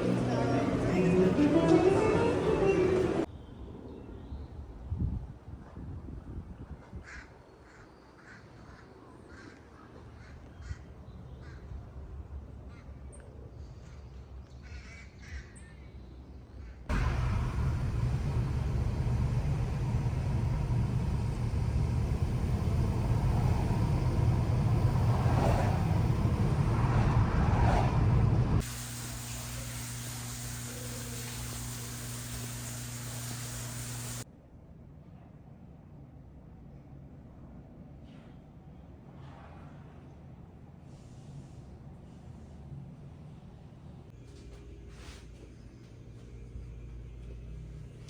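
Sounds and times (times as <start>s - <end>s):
helicopter engine and rotor noise: 16.9s - 28.7s.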